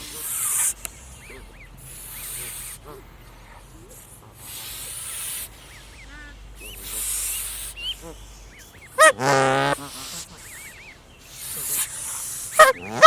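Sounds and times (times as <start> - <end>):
goslings peeping: 0.0 - 13.0
goose honking: 4.9 - 10.8, 12.6 - 13.0.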